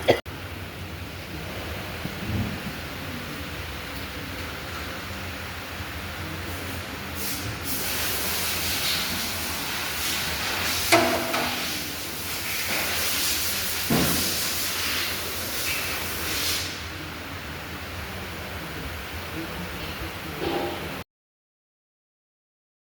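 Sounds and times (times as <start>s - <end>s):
engine hiss: 0.3s - 21.0s
sharp engine knocks: 10.9s - 11.8s.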